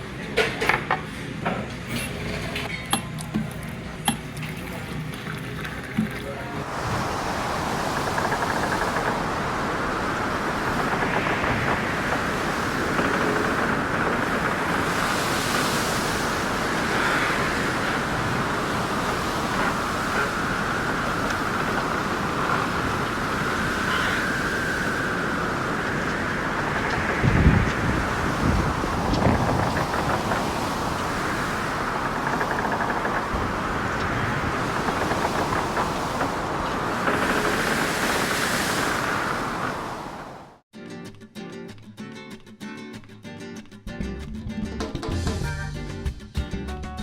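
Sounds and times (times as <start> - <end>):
rough sea waves rushing: 2.1 - 40.6
storm wind: 3.7 - 40.6
wind buffeting microphone: 5.8 - 40.6.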